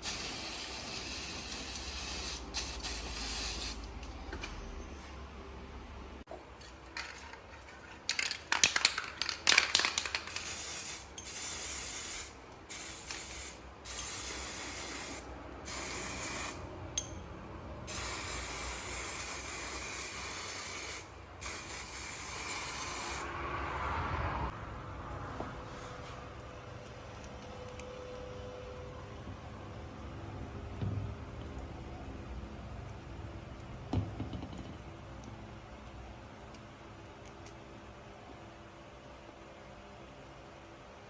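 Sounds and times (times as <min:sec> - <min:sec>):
pressurised spray hissing: 0:00.0 - 0:03.8, 0:10.4 - 0:16.6, 0:17.9 - 0:23.3
sharp clicks and rattles: 0:06.9 - 0:10.6.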